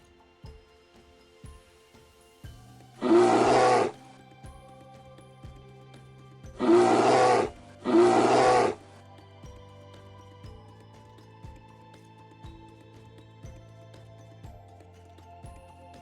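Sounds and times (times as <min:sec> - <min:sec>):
large animal roaring: 0:03.0 - 0:04.0, 0:06.6 - 0:08.8.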